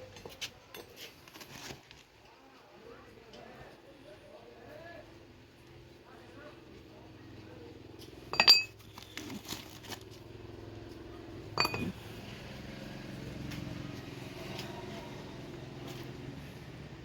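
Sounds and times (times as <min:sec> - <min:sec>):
metal parts clinking together: 0:08.3 - 0:09.4, 0:11.6 - 0:12.0.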